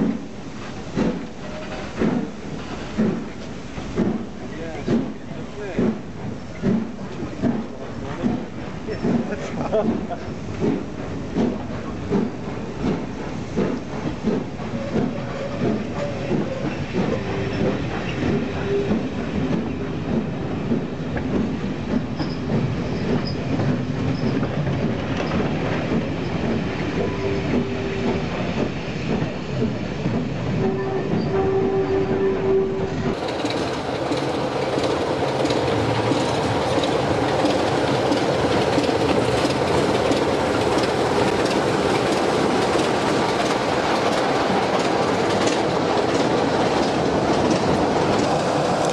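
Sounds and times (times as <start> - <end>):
train wheels clicking over rail joints: 0.0 - 48.9
train wheels squealing: 8.8 - 9.2, 14.6 - 20.0, 22.1 - 24.5, 26.1 - 29.6, 30.6 - 33.0.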